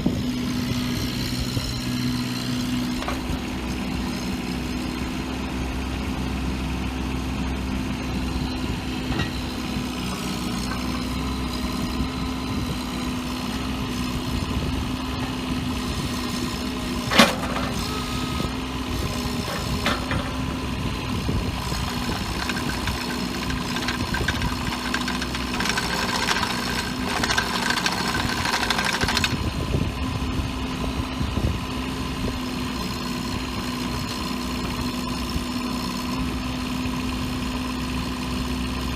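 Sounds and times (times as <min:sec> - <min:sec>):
excavator diesel engine idling: 0:00.0 - 0:38.9.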